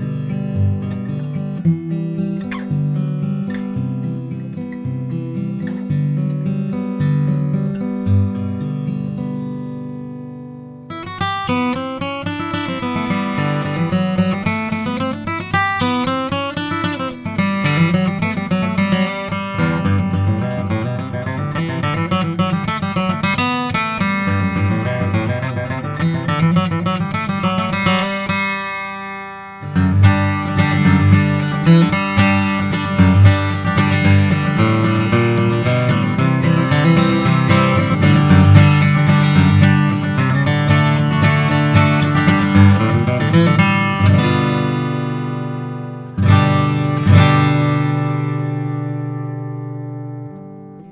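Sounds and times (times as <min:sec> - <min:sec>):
acoustic guitar playing: 0:00.0 - 0:50.9.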